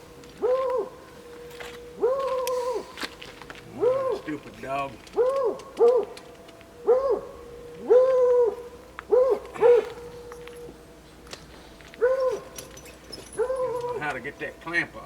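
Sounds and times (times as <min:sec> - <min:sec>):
dog whining: 0:02.0 - 0:03.1, 0:03.7 - 0:04.3, 0:05.2 - 0:06.2, 0:06.8 - 0:10.8, 0:12.0 - 0:14.1.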